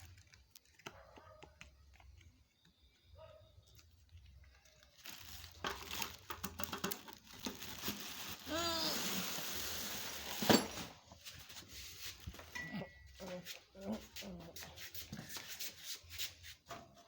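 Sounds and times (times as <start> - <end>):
packaging crinkling and rustling: 0.0 - 1.0, 3.7 - 12.6.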